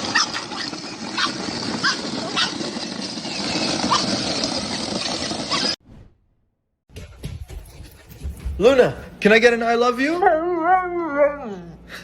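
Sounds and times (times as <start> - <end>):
dog barking: 0.1 - 2.6.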